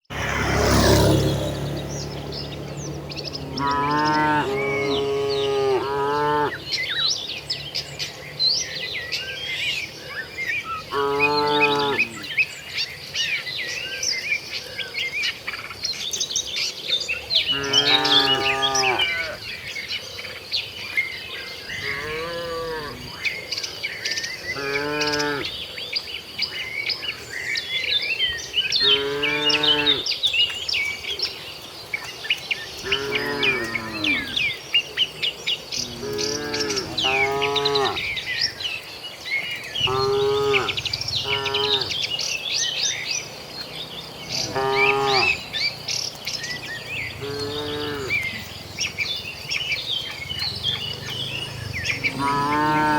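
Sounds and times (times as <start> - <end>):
small birds chirping: 0.0 - 52.9
cattle mooing: 3.5 - 6.6, 10.9 - 12.3, 17.5 - 19.4, 21.8 - 23.2, 24.5 - 25.5, 28.8 - 30.0, 32.8 - 34.5, 35.8 - 38.2, 39.8 - 42.2, 44.2 - 45.5, 47.1 - 49.1, 49.7 - 52.9.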